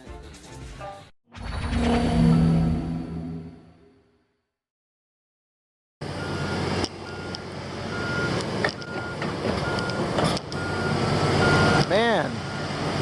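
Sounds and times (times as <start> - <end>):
diesel engine rumble: 6.0 - 13.0
reversing alarm beeping: 6.2 - 10.0, 10.6 - 12.8.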